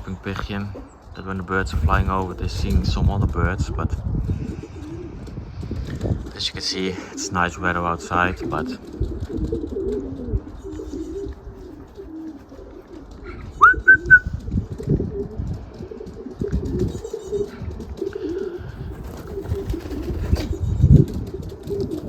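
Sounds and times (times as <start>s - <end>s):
pigeons cooing: 0.0s - 2.9s, 3.5s - 22.0s
short rising whistle: 13.6s - 14.3s.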